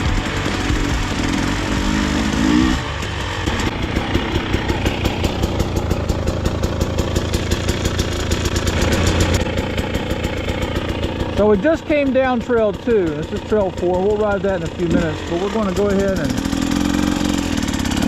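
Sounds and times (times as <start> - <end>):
background music: 0.0 - 3.7
vehicle engine idling: 0.0 - 18.0.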